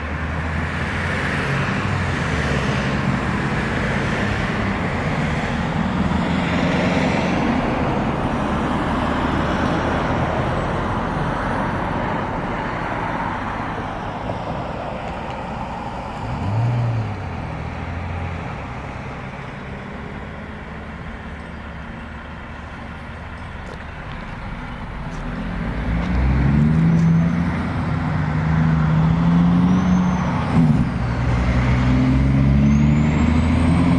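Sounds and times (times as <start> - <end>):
engine revving: 0.0 - 21.4, 24.4 - 33.9
car engines running: 0.0 - 33.9.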